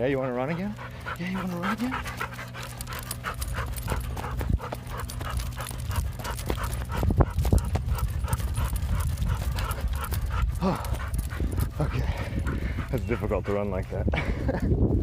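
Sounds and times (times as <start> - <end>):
running footsteps: 0.0 - 14.0
dog panting: 0.0 - 14.6.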